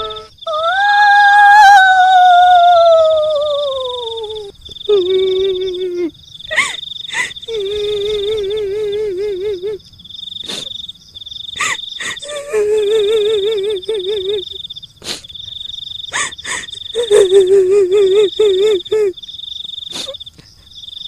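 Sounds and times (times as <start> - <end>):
crickets trilling: 0.0 - 21.0
woman's trembling wail-laugh: 5.8 - 9.8, 11.6 - 14.5, 16.2 - 19.1.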